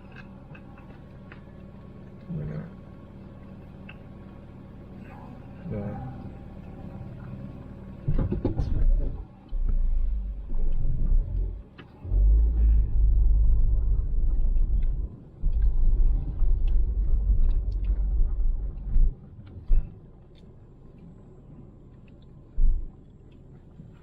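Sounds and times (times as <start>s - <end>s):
car rumbling on rough road: 0.0s - 20.1s
car knocks and rattles: 8.0s - 9.2s.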